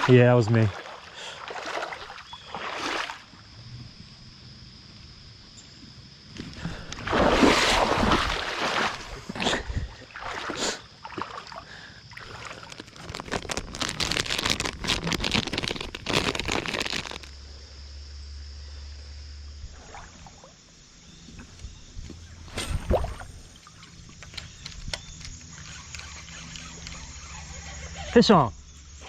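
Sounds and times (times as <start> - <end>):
water splashing and sloshing: 0.0 - 3.6, 6.3 - 17.3, 19.6 - 28.1.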